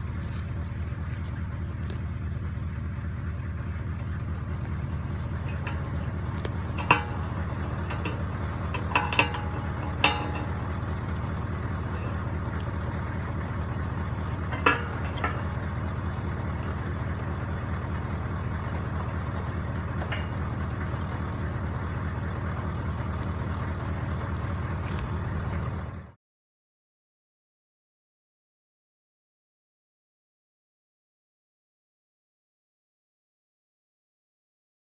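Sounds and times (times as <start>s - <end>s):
vehicle engine idling: 0.0s - 26.2s
metal clinks and rattles: 3.4s - 22.7s.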